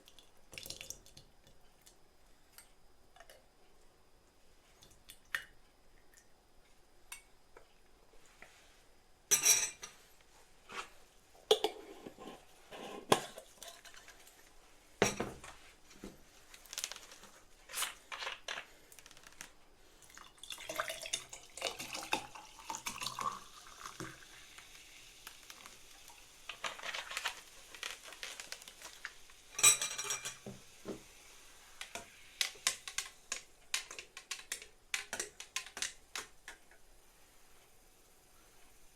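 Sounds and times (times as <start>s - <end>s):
dishes and utensils clinking: 9.3s - 10.1s, 15.0s - 15.5s, 29.5s - 30.6s.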